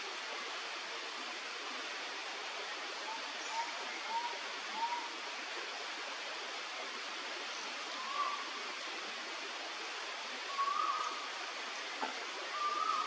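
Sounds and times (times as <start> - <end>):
steady hiss: 0.0 - 13.0
whistled bird notes: 10.5 - 11.2, 12.5 - 13.0.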